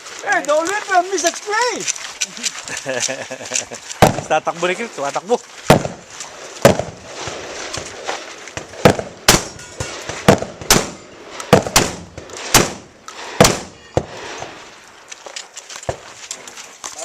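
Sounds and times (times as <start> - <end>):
shotgun shots: 4.0 - 4.4, 5.6 - 14.6.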